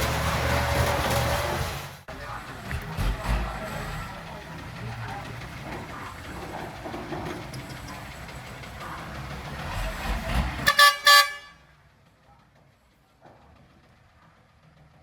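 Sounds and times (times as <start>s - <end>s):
heavy machinery rumbling: 0.0s - 15.0s
vehicle horn toots: 10.5s - 11.8s.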